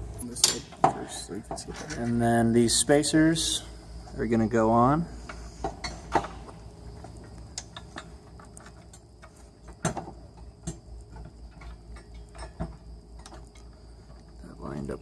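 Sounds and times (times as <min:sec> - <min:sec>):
metal spacers clicking and knocking: 0:00.3 - 0:02.3, 0:05.2 - 0:14.2.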